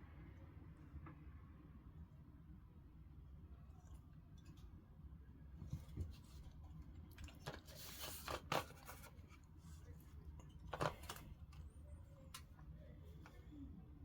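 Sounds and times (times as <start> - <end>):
faint low hum: 0.0 - 14.0.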